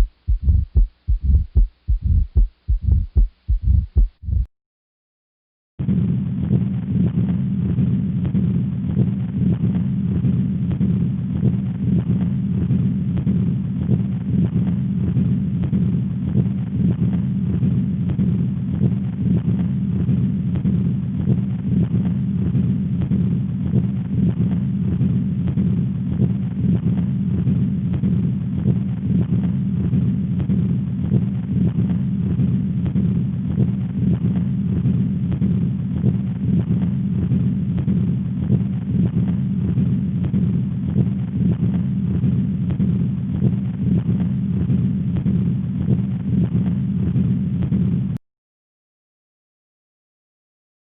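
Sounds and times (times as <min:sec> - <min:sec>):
heartbeat through stethoscope: 0:00.0 - 0:04.5, 0:22.4 - 0:47.8
low rumbling noise: 0:00.0 - 0:04.5
steady low rumble: 0:00.0 - 0:04.5, 0:05.8 - 0:48.2.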